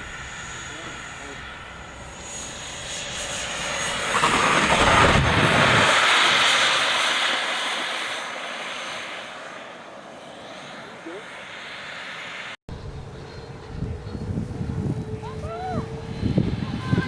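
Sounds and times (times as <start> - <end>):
model jet flying past: 0.0 - 17.0.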